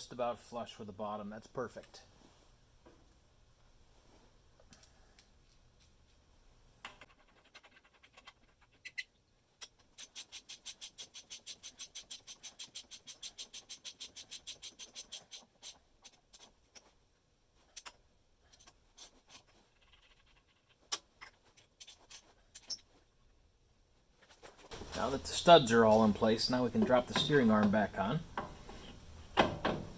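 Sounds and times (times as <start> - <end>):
hand ratchet clicking: 9.6 - 16.8
tools tapping: 25.9 - 29.9.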